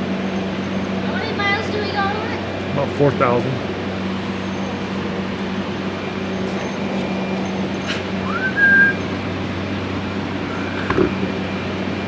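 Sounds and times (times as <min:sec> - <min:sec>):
low mechanical hum: 0:00.0 - 0:12.0
rising whistle: 0:08.2 - 0:09.1, 0:10.4 - 0:10.9.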